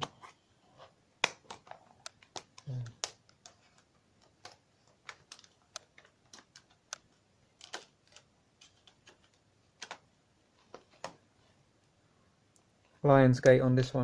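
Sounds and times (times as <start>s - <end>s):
plastic cases clicking: 1.2s - 10.0s.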